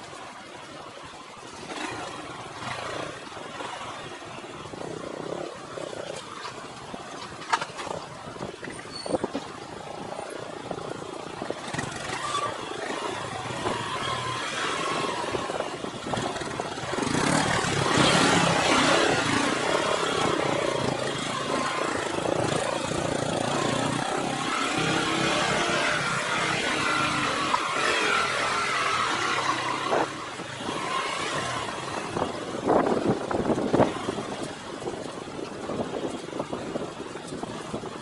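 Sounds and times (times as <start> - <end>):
wind and road noise: 0.0 - 38.0
motorcycle engine running: 10.6 - 38.0.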